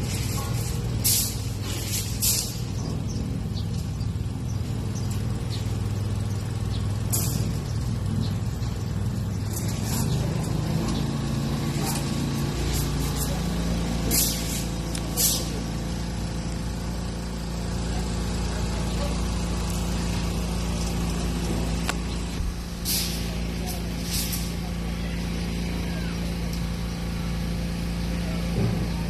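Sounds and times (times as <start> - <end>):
air hiss bursts: 0.0 - 2.7, 13.9 - 15.7, 22.7 - 24.7
air compressor motor hum: 0.0 - 29.0.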